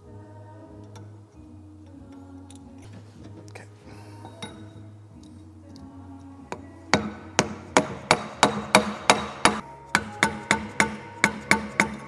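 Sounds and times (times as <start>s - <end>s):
hammer striking metal: 7.0s - 12.0s.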